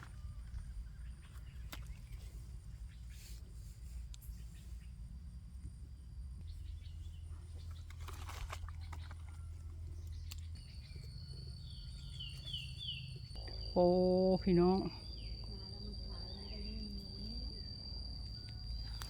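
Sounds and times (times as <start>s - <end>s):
high insect trill: 0.0s - 19.0s
low rumble on microphone: 0.0s - 19.0s
vegetation rustling: 7.6s - 9.3s
bird chirps: 8.8s - 19.0s.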